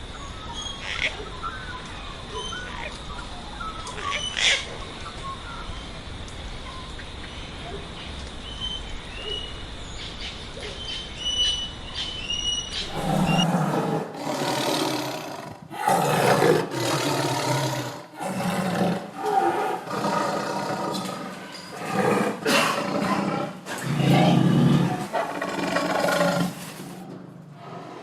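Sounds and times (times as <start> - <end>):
big cat roaring: 12.9 - 28.0.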